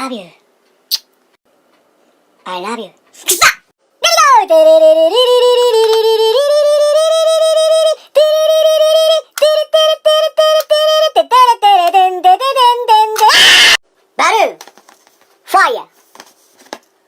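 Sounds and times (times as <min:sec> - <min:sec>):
high voice singing: 0:04.0 - 0:13.8.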